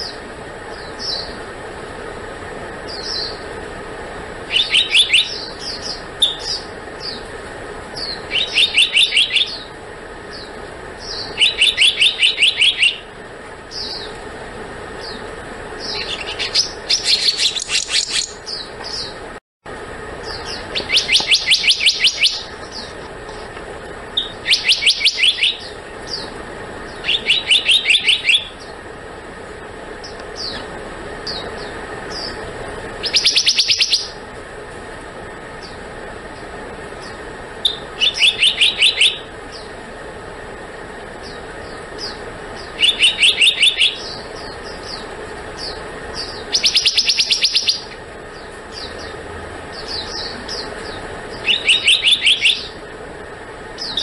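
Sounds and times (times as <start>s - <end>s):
bird song bursts of high notes: 4.5s - 7.2s, 8.0s - 13.1s, 15.0s - 19.2s, 20.2s - 23.0s, 24.1s - 28.8s, 33.0s - 34.2s, 37.0s - 39.8s, 41.2s - 52.8s.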